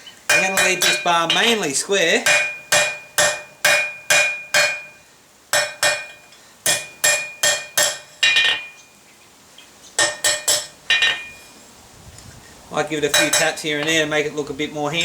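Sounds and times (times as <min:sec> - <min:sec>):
hammer striking metal on anvil: 0:00.3 - 0:01.6, 0:02.2 - 0:08.8, 0:10.0 - 0:11.5, 0:13.1 - 0:14.0.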